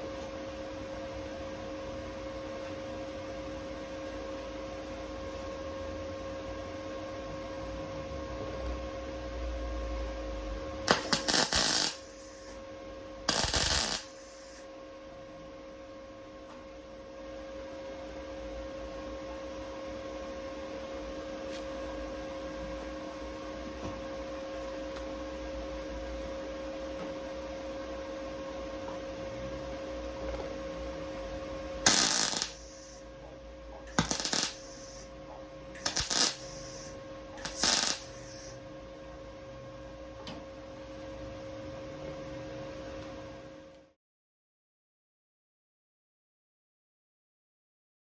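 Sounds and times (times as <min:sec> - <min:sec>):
steady electrical hum: 0:00.0 - 0:44.0
welder tack welds: 0:10.9 - 0:12.6, 0:13.3 - 0:14.6, 0:31.8 - 0:33.0, 0:33.9 - 0:35.1, 0:35.8 - 0:38.6.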